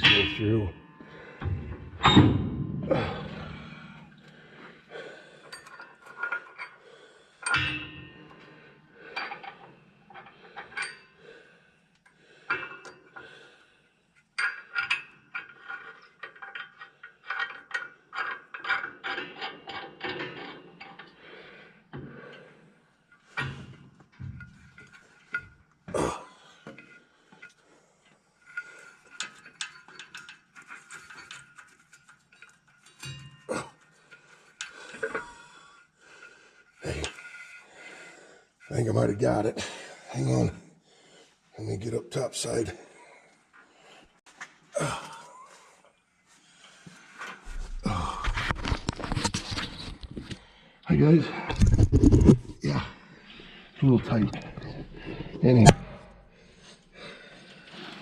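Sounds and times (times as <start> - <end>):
bolt and tools clinking on steel: 9.2 - 11.1, 11.9 - 13.2, 14.2 - 21.2, 28.5 - 35.4.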